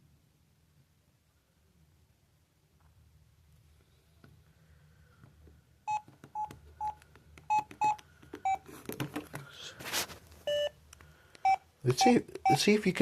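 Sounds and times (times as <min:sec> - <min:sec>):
phone keypad beeps: 0:05.9 - 0:08.6, 0:10.5 - 0:10.8, 0:11.4 - 0:12.7
phone handling rustle: 0:08.2 - 0:10.4.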